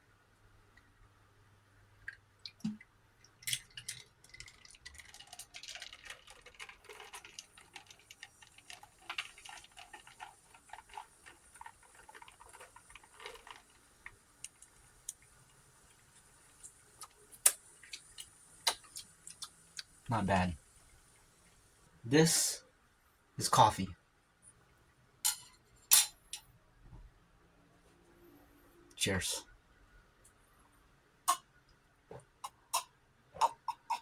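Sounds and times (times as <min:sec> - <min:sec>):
drink fizzing: 0:02.0 - 0:21.8
ice cubes crackling in a glass: 0:03.4 - 0:16.0.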